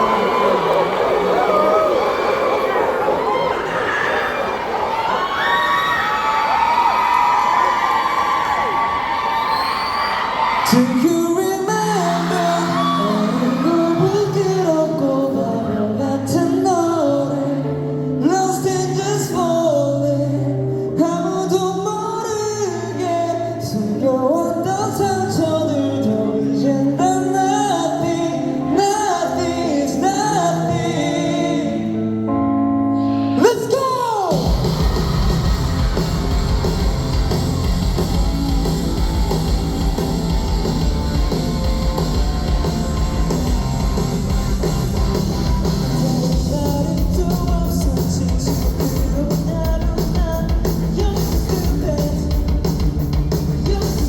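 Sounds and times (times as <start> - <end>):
person singing: 10.6 - 37.4, 38.0 - 54.0
rock band playing: 28.5 - 54.0.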